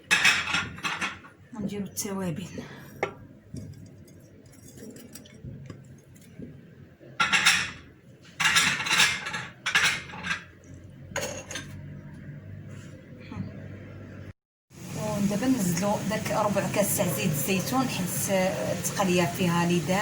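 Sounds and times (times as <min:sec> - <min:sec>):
metal spoons clinking on pot: 0:11.2 - 0:11.8.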